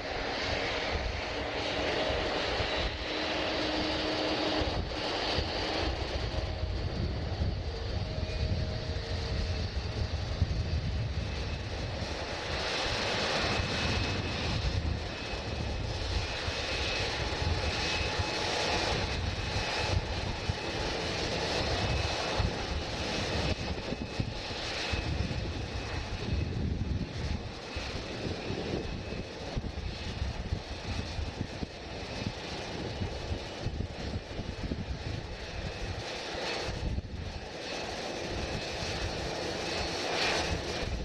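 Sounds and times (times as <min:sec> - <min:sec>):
high engine whine: 0:00.0 - 0:41.0
jet engines rumbling: 0:00.0 - 0:41.0.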